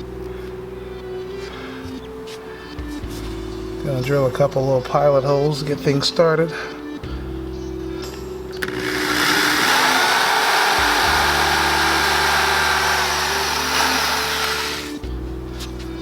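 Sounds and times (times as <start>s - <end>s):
electric drill boring holes: 8.6s - 15.0s.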